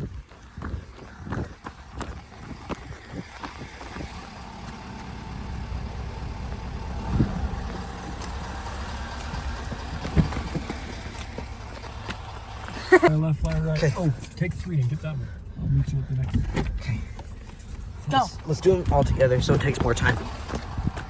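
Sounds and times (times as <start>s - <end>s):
vehicle engine humming: 0.0s - 21.0s
thumps: 9.2s - 12.2s.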